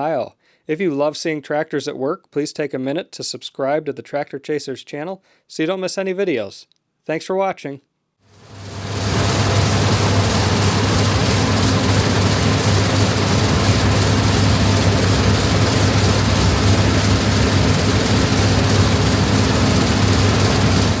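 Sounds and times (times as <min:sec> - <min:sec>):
combine harvester running: 0:08.4 - 0:21.0.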